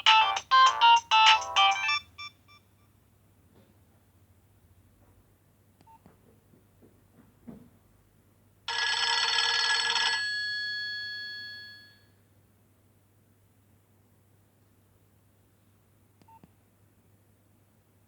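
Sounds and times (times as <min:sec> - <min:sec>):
mobile phone ringtone: 0:00.0 - 0:02.6, 0:08.7 - 0:12.0.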